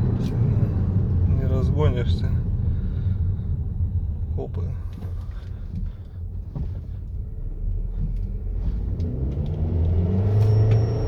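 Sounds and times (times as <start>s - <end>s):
car engine accelerating: 7.1s - 11.0s.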